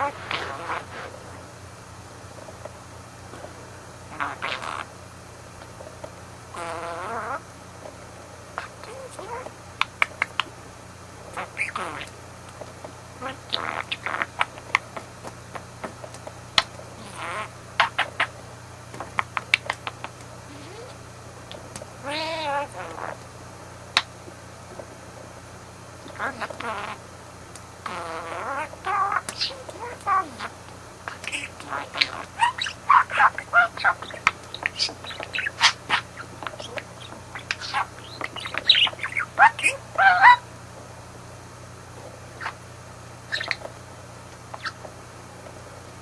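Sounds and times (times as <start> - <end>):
budgie warbling call: 0.0 - 1.1, 4.1 - 4.9, 6.5 - 7.4, 11.4 - 12.1, 13.2 - 14.6, 17.0 - 18.3, 20.5 - 21.0, 22.0 - 23.2, 26.1 - 27.0, 27.8 - 40.5, 43.3 - 43.7, 44.5 - 44.8
budgie chattering and chirping: 4.1 - 4.9, 11.4 - 12.1, 13.2 - 14.6, 17.0 - 18.3, 19.6 - 21.0, 27.8 - 40.4, 42.4 - 42.6, 43.3 - 43.7, 44.5 - 44.9.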